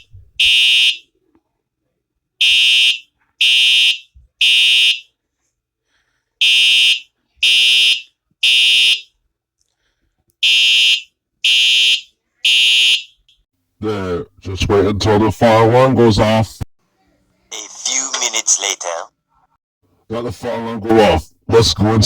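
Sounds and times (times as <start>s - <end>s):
fire alarm horn buzzing: 0.0s - 1.0s, 2.4s - 5.1s, 6.4s - 9.1s, 10.4s - 13.3s.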